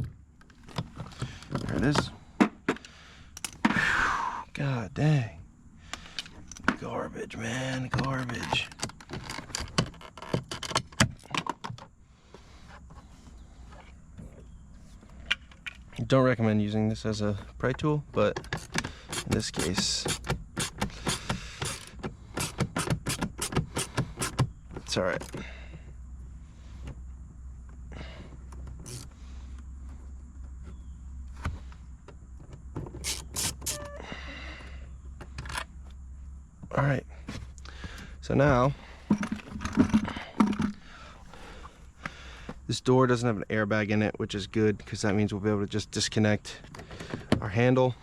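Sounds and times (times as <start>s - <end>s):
steady low hum: 11.9s - 48.0s
brief squeak: 33.0s - 34.2s.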